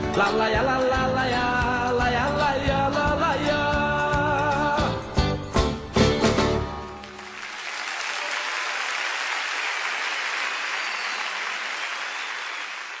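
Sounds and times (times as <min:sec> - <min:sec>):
audience applauding: 0:06.7 - 0:13.0.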